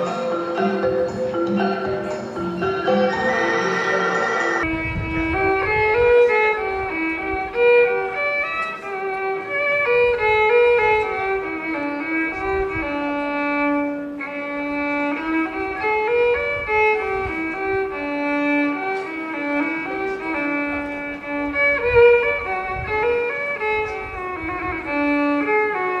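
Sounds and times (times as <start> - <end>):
bowed string instrument melody: 0.0 - 26.0.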